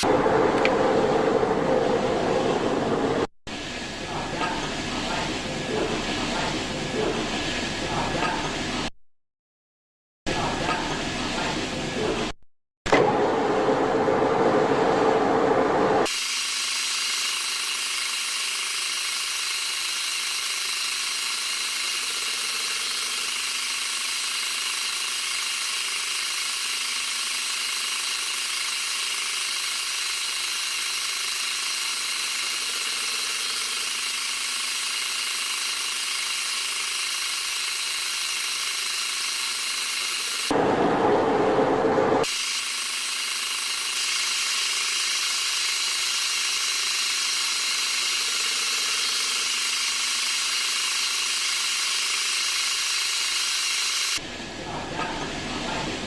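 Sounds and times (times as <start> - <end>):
lower running machine sound: 0.0 - 8.9, 12.9 - 16.1, 40.2 - 42.3.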